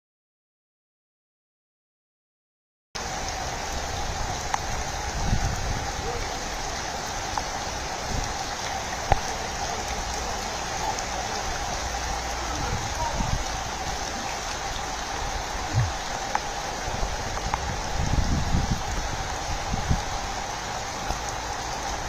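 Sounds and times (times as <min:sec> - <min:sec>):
steady rain: 0:03.0 - 0:22.0
low bumps: 0:12.4 - 0:18.8.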